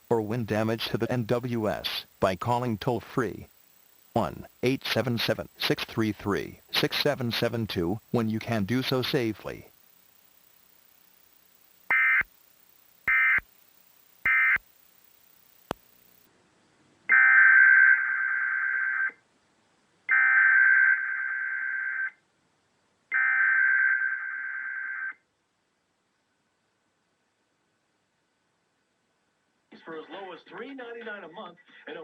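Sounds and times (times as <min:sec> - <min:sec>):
digital data bursts: 0:00.1 - 0:10.1, 0:11.8 - 0:12.4, 0:13.0 - 0:13.5, 0:14.2 - 0:14.7
click: 0:15.6 - 0:15.9.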